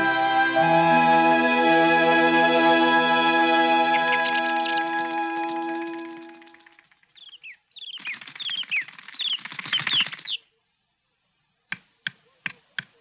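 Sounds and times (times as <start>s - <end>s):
small birds chirping: 3.8s - 10.8s.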